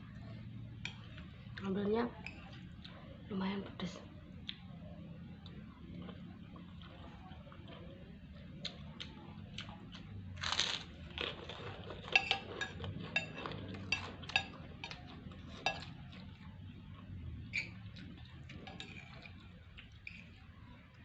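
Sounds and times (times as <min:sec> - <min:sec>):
chewing and crunching: 0:00.1 - 0:21.0
spoon scraping on plate: 0:18.5 - 0:19.4.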